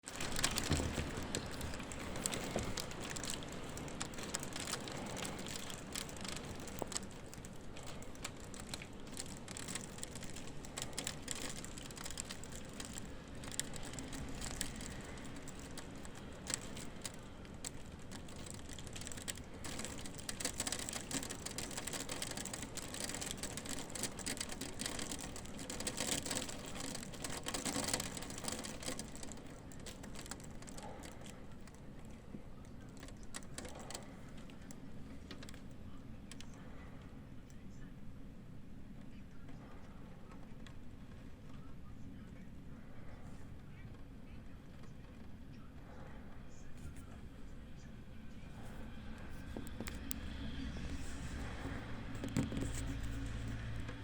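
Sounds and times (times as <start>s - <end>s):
rain: 0.0s - 37.0s, 48.4s - 54.0s
hailstones striking hard surfaces: 0.1s - 31.7s.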